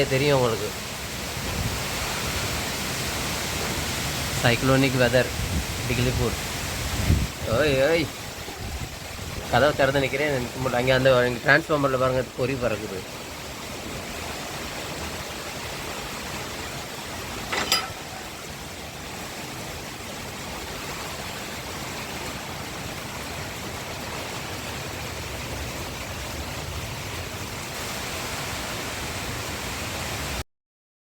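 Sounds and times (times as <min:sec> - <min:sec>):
strong wind rushing: 0:05.3 - 0:09.8.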